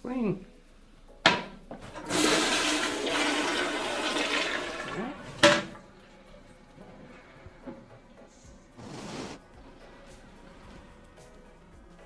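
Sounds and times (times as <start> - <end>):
toilet water rushing: 1.9 - 5.8.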